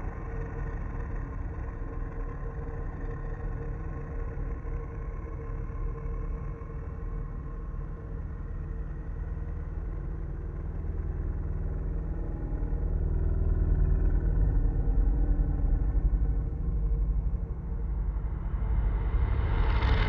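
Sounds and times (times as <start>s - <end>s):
deep steady rumble: 0.0s - 20.0s
faint sustained tones: 15.8s - 20.0s.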